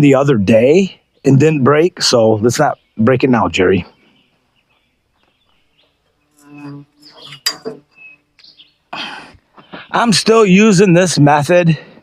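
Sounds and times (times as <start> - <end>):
bird calls: 2.2 - 10.0.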